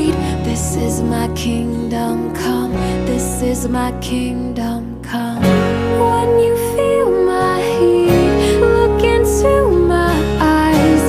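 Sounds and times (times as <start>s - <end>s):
slow song with held notes: 0.0s - 11.0s
plucked string accompaniment: 5.4s - 11.0s.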